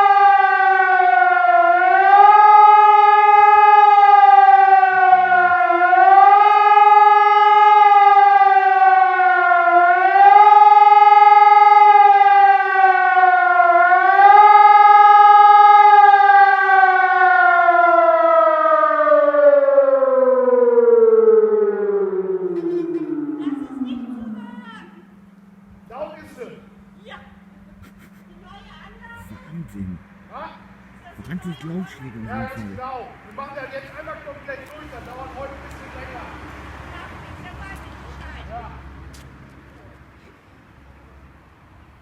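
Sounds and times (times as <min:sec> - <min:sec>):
warning siren wailing: 0:00.0 - 0:27.7, 0:28.8 - 0:34.2.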